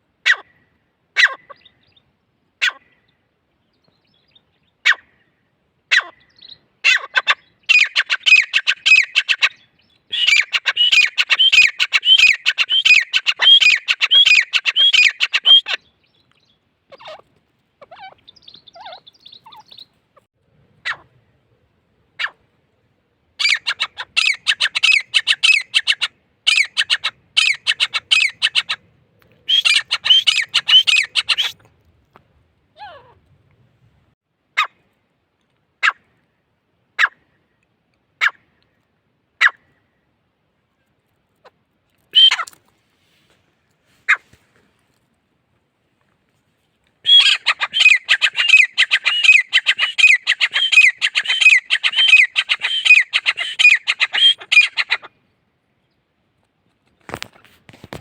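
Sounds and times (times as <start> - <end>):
bird harsh repeated calls: 0.2 - 0.6, 1.2 - 2.0, 2.6 - 3.0, 4.8 - 5.2, 5.9 - 16.1, 16.9 - 17.2, 17.8 - 19.8, 20.8 - 21.1, 23.4 - 28.8, 29.4 - 31.6, 42.2 - 42.6, 47.0 - 55.2
faint soft bird notes: 15.4 - 20.1
bird calling sharp falling notes: 47.1 - 54.8.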